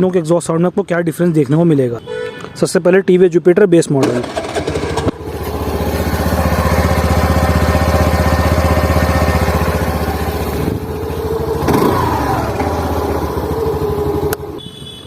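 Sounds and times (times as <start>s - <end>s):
scooter engine idling: 4.2s - 15.0s.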